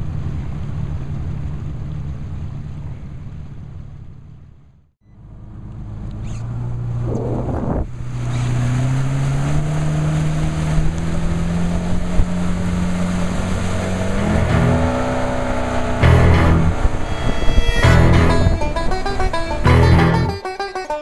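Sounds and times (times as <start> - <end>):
motorboat engine revving up: 6.3 - 20.4
steady rushing noise: 12.5 - 20.3.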